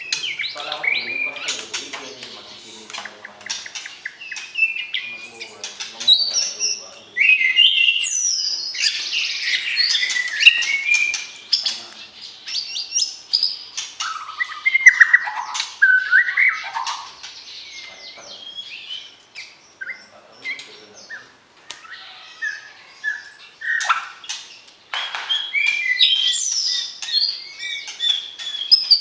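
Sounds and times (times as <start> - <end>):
bird sharp clicking notes: 1.4 - 6.6, 9.8 - 12.1
bird singing whistled phrases: 4.0 - 24.3, 25.0 - 29.0.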